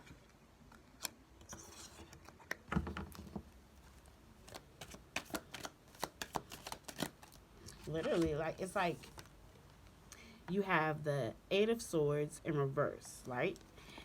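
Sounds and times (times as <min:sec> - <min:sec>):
cards rustling: 0:03.9 - 0:09.9
cards clicking and tapping: 0:04.4 - 0:08.4.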